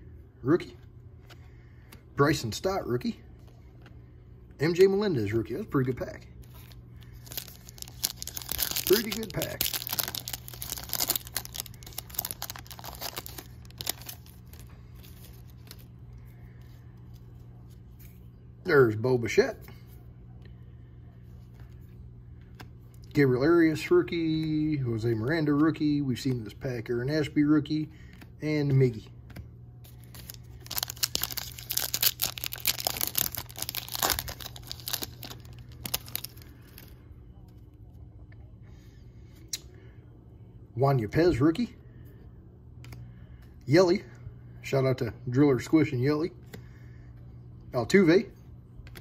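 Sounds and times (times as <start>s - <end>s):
foil wrapper crinkling and tearing: 6.4s - 15.9s, 29.9s - 37.0s
cards rustling: 6.4s - 16.0s, 28.1s - 37.0s.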